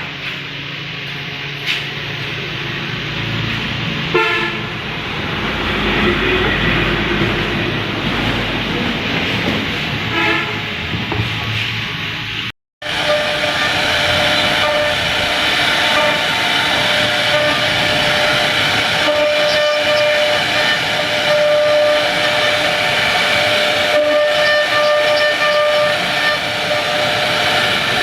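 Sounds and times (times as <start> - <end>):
router spindle whine: 12.8 - 28.0.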